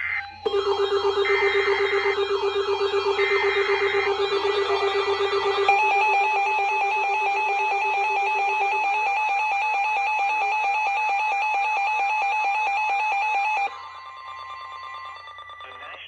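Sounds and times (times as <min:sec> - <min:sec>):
electronic alert tone warbling: 0:00.0 - 0:09.6
low steady tone: 0:00.4 - 0:09.1.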